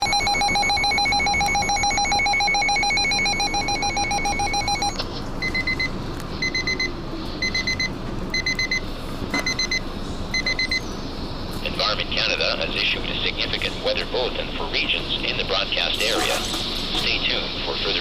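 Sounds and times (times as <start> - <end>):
high beeps: 0.0 - 8.8.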